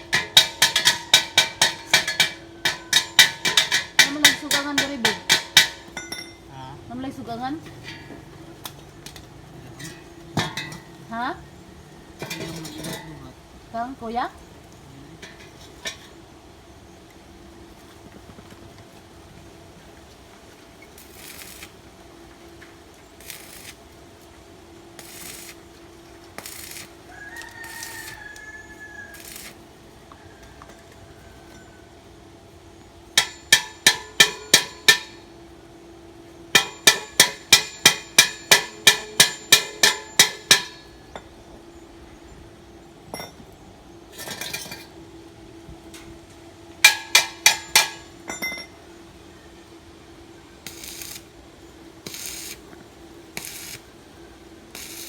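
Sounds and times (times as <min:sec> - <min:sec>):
hammer striking steel: 0:00.0 - 0:06.4, 0:33.2 - 0:35.3, 0:36.6 - 0:41.0, 0:46.8 - 0:48.7
steady low hum: 0:00.0 - 0:28.2, 0:28.8 - 0:55.0.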